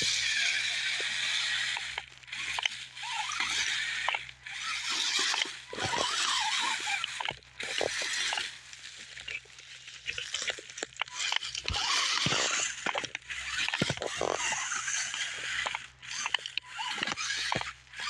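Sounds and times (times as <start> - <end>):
electric motor whirring: 0.0 - 18.0
tyres scraping on rock: 0.0 - 18.0.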